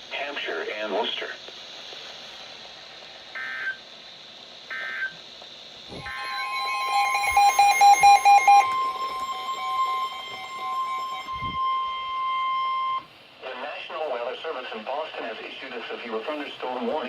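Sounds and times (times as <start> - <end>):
rapid electronic beeping: 5.9 - 13.1
steady warning alarm tone: 5.9 - 13.1
warbling digital data tones: 5.9 - 13.1.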